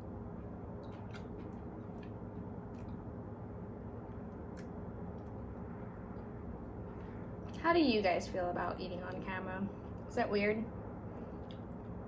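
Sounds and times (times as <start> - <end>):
low room hum: 0.0 - 12.0
person chewing food: 0.4 - 3.3, 11.3 - 12.0.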